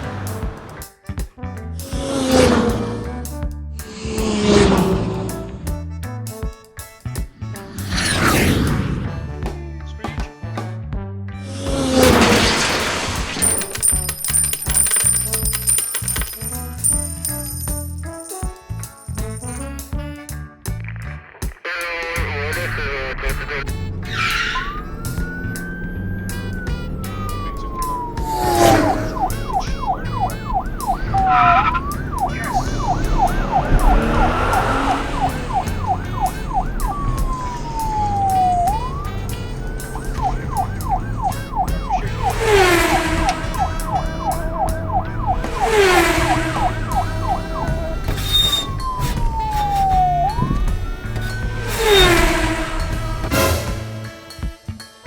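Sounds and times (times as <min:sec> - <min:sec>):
music: 0:00.0 - 0:42.4, 0:47.0 - 0:55.0
police siren wailing and yelping: 0:12.0 - 0:16.4, 0:22.6 - 0:53.3.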